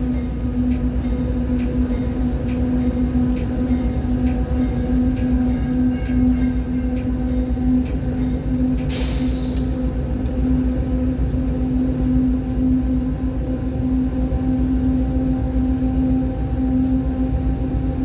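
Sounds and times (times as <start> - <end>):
train rumbling: 0.0 - 18.0
short hiss: 8.9 - 9.8
droning tone: 9.7 - 18.0.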